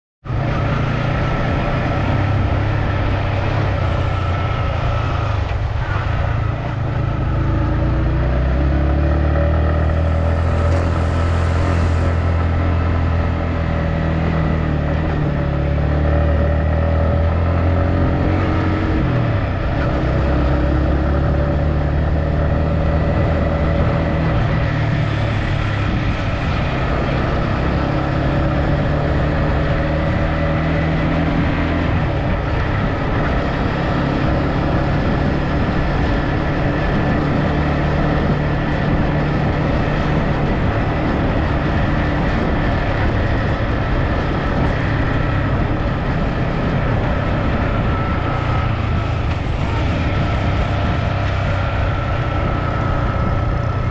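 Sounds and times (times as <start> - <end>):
vehicle engine running: 0.2 - 53.9.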